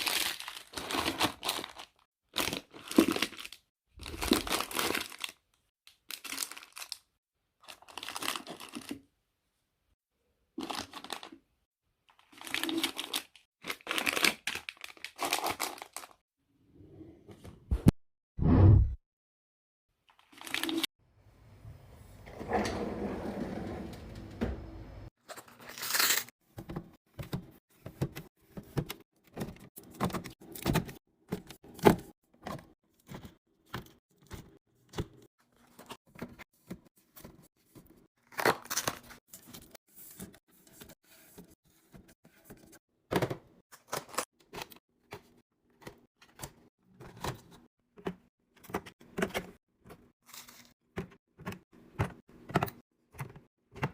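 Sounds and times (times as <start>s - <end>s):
crinkly packaging rustling: 0.0s - 9.1s, 10.6s - 11.4s, 12.1s - 16.2s, 25.2s - 26.3s, 50.2s - 50.8s.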